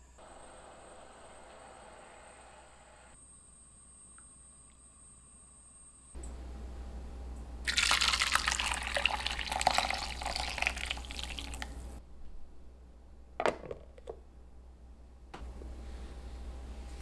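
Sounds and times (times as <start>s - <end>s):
running water splashing: 7.7s - 12.0s.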